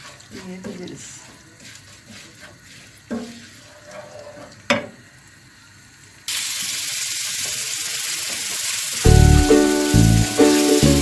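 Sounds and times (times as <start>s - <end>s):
loud steady hiss: 6.3s - 11.0s.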